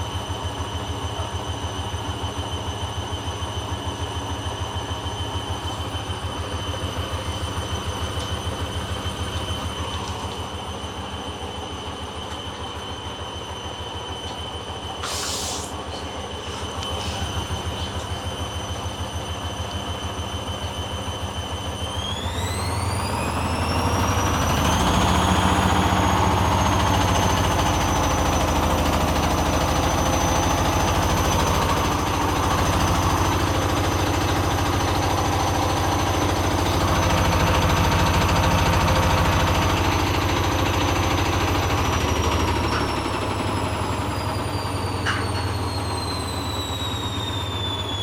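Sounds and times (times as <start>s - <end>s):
washing machine motor whining: 0.0s - 48.0s
brief rush of hiss: 15.0s - 15.8s.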